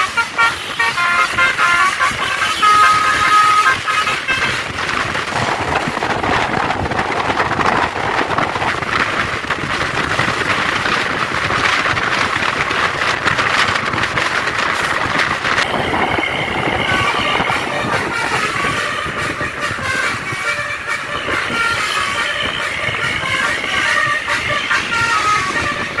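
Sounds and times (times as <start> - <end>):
musical air horn: 0.0 - 7.2, 15.6 - 26.0
bus passing with engine roar: 0.0 - 26.0.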